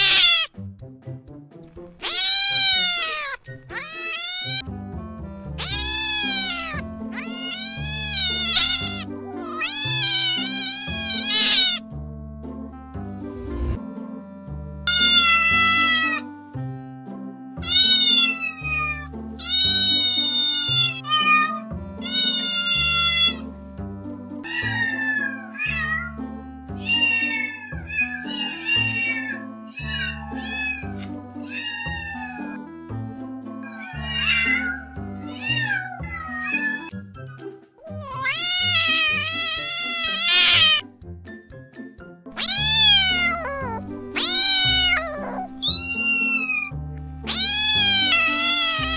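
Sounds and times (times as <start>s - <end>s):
cat meowing: 0.0s - 0.5s, 2.0s - 4.6s, 5.5s - 11.8s, 14.9s - 16.2s, 17.6s - 23.4s, 24.4s - 26.1s, 26.8s - 32.6s, 33.6s - 36.9s, 37.8s - 40.8s, 42.4s - 48.9s
background music: 0.0s - 48.9s.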